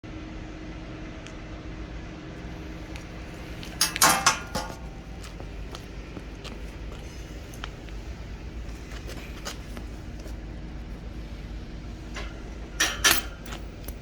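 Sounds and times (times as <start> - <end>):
steady low hum: 0.1 - 14.0
clattering clicks: 3.6 - 5.0.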